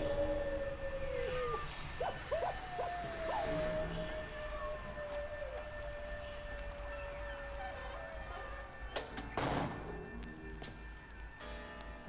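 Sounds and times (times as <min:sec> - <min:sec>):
canine howling: 0:00.0 - 0:09.4.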